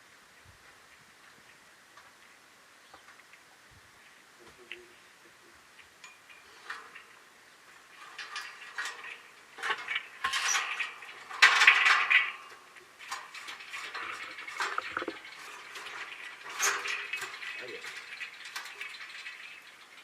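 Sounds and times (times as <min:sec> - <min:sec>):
small hard objects clinking: 0:06.0 - 0:20.0.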